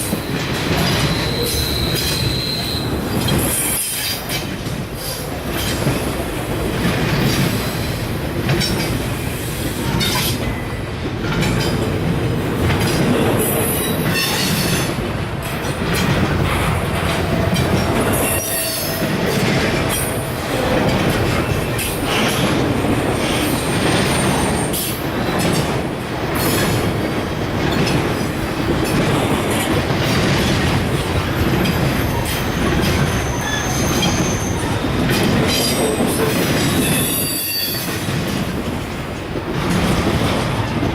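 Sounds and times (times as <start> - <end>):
high-pitched wheel squeals: 0.9 - 2.9, 18.1 - 19.1, 33.0 - 34.8, 36.8 - 37.9
wheels clattering over rail joints: 9.8 - 40.9.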